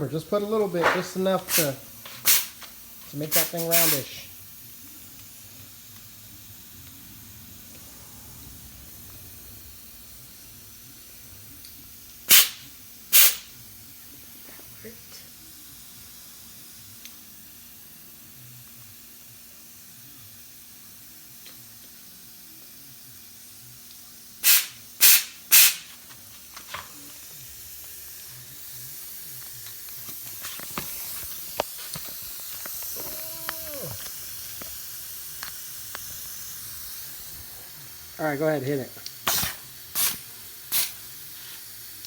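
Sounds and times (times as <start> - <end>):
compressed air hissing: 0.6 - 4.7, 6.2 - 11.0, 12.2 - 13.5, 24.4 - 26.0, 30.3 - 42.0
air hose blasts: 0.7 - 4.3, 12.2 - 13.5, 24.4 - 25.9, 39.2 - 41.9.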